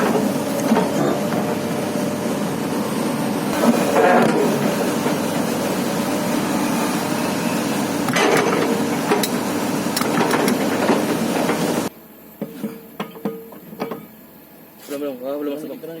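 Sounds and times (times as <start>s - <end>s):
excavator engine running: 0.0s - 11.9s.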